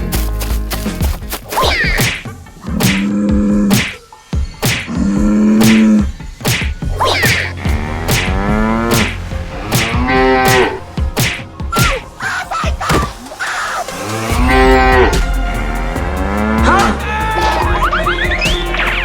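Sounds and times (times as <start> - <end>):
sharp hits and whacks: 0.7 - 4.0, 4.6 - 12.2, 12.8 - 13.5
cattle mooing: 7.4 - 9.2, 14.0 - 17.6.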